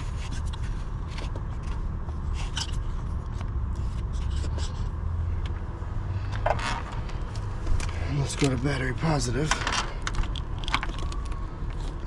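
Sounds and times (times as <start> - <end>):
small scrapes and clicks: 0.0 - 5.5, 9.5 - 12.0
steady low hum: 0.0 - 12.0.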